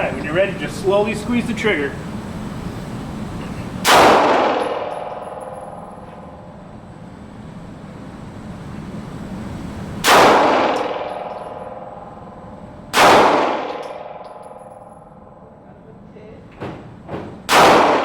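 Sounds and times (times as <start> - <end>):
handgun shots echoing: 3.8 - 6.0, 10.0 - 11.9, 12.9 - 14.8, 17.5 - 18.0.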